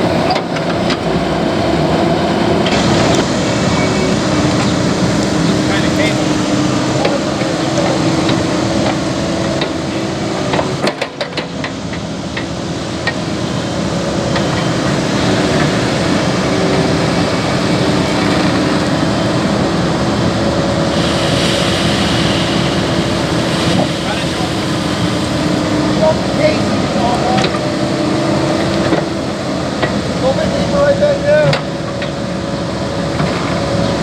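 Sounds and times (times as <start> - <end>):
excavator diesel engine running: 0.0 - 34.0
rush of hiss: 19.2 - 28.2.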